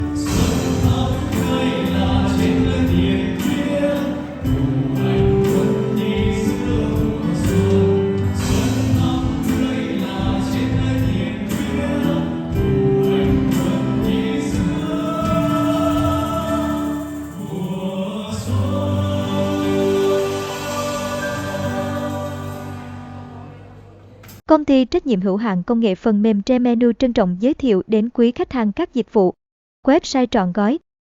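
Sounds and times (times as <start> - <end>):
instrumental backing with beat: 0.0 - 23.3
group singing in chorus: 0.0 - 23.7.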